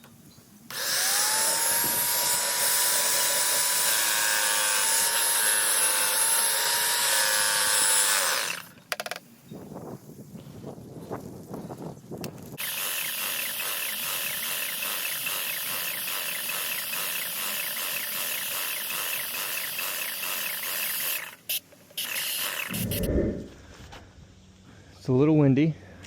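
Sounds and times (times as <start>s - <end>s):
paint sprayer hissing: 12.6s - 23.1s.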